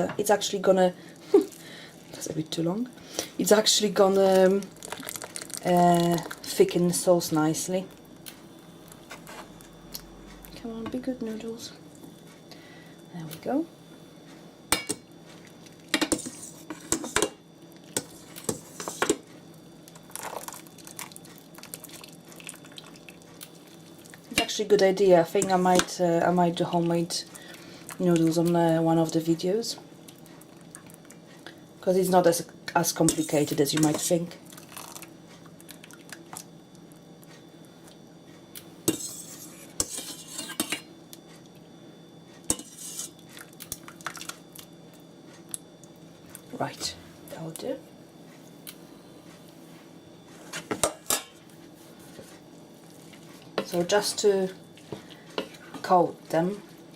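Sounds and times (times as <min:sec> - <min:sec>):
utensil scraping cookware: 0:16.0 - 0:17.4, 0:18.0 - 0:19.2, 0:25.3 - 0:25.9, 0:38.9 - 0:40.8, 0:42.5 - 0:43.2.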